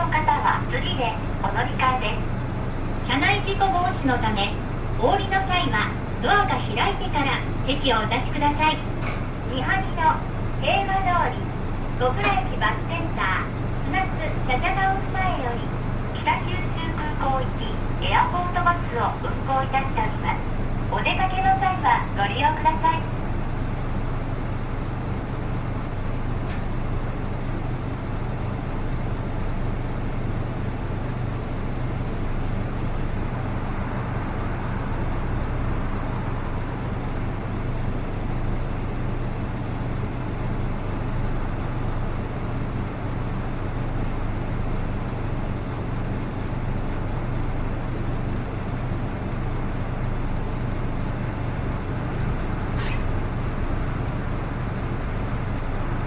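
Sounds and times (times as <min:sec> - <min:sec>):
bus engine drone: 0:00.0 - 0:56.0
brief sharp squeak: 0:52.8 - 0:53.1.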